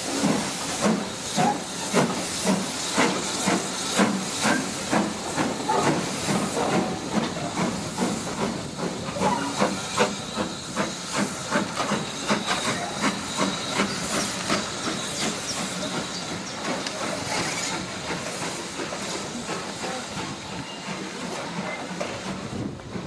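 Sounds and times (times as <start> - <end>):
steam locomotive hissing: 0.0 - 23.0.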